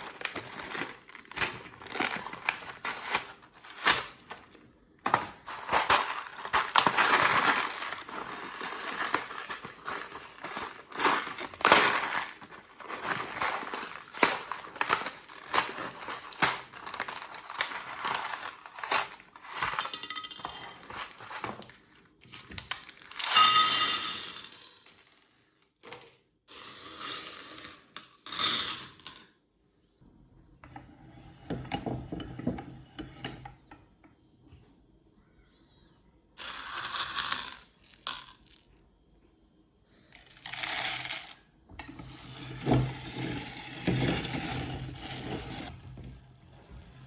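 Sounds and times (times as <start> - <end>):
pebbles crunching in meat grinder: 5.3 - 19.6.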